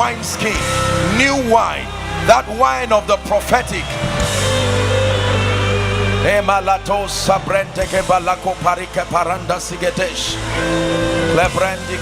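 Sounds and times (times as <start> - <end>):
slow worship music: 0.0 - 12.0.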